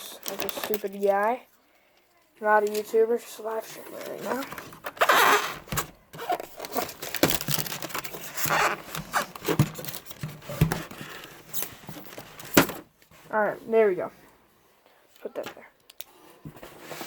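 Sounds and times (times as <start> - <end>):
packaging tearing and rustling: 0.1 - 1.1, 4.2 - 12.7.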